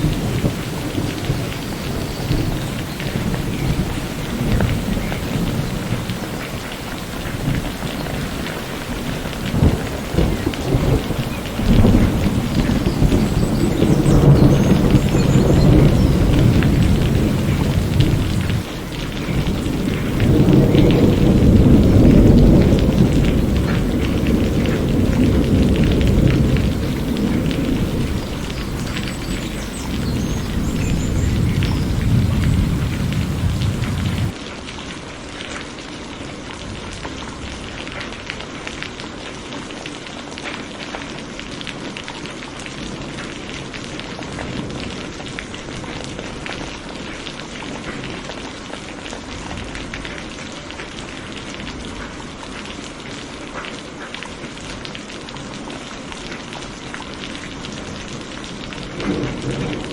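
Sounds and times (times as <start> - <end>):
low thunder rumble: 0.0 - 34.3
steady rain falling: 0.0 - 59.9.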